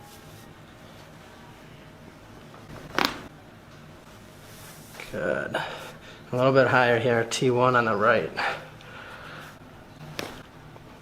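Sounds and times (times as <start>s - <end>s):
faint steady hum: 0.0s - 11.0s
spine cracking: 2.7s - 3.3s.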